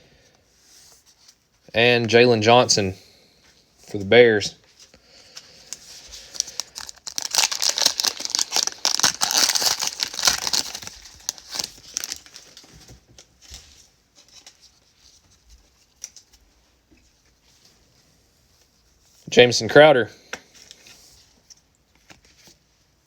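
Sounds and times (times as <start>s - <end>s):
cards being handled: 4.6s - 16.5s
plastic wrapper tearing and crinkling: 5.6s - 13.3s.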